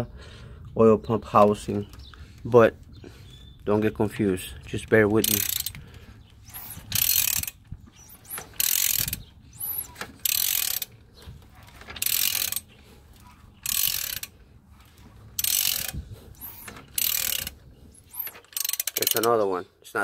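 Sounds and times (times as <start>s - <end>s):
ratchet wrench clicking: 5.2s - 5.8s, 6.4s - 10.9s, 12.0s - 12.7s, 13.6s - 14.3s, 15.4s - 19.4s.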